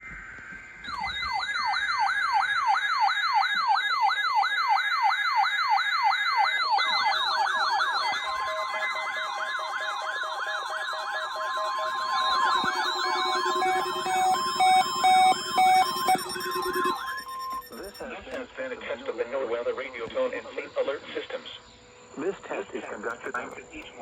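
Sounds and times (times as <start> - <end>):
second siren pattern: 0.0 - 18.1
siren wailing: 0.0 - 18.1
steady tones: 6.8 - 18.0.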